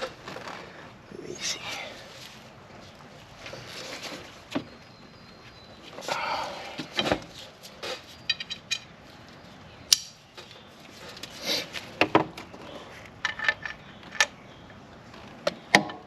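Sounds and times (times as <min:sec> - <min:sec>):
metal tools clinking: 0:07.9 - 0:08.9.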